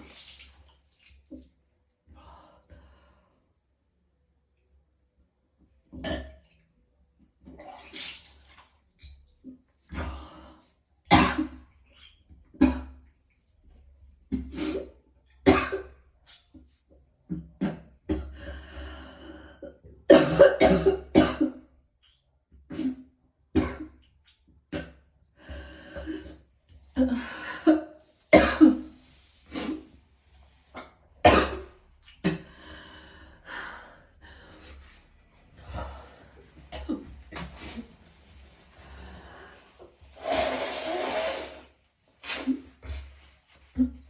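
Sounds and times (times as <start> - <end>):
person coughing hard: 15.5 - 15.9, 20.1 - 21.6, 27.7 - 28.9, 31.2 - 31.7.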